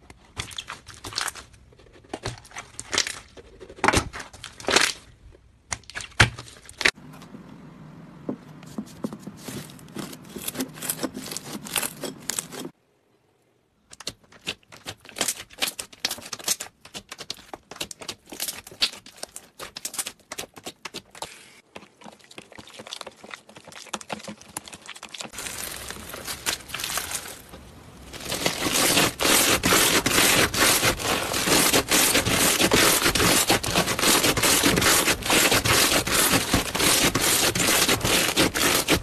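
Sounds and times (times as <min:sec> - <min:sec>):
low steady hum: 0:07.0 - 0:13.2.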